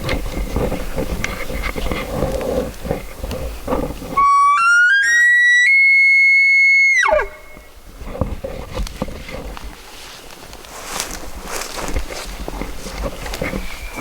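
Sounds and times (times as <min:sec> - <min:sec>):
elk bugling: 0:04.1 - 0:07.8.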